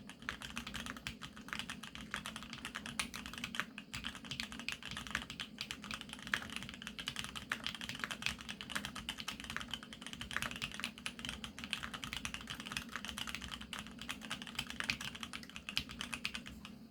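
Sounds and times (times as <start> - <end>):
mechanical keyboard typing: 0.0 - 16.7
low steady hum: 0.0 - 16.9.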